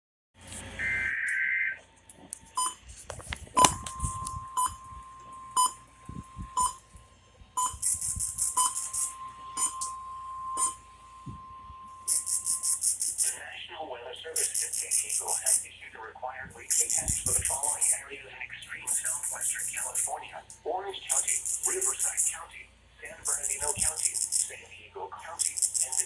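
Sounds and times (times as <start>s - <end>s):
steady weather alert tone: 0.8s - 1.8s, 2.4s - 26.0s
warbling data header burst: 7.6s - 13.5s, 16.6s - 18.0s, 21.1s - 22.4s, 23.1s - 24.6s.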